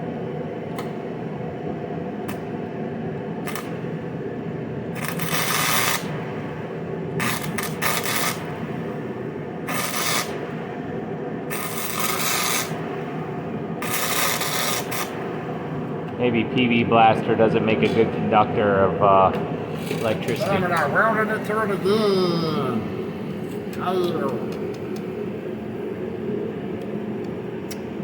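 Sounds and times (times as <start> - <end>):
steady low hum: 0.0 - 28.0
welder arc crackling hiss: 3.4 - 3.8, 5.0 - 6.2, 7.2 - 8.9, 9.7 - 10.5, 11.5 - 12.9, 13.8 - 15.3.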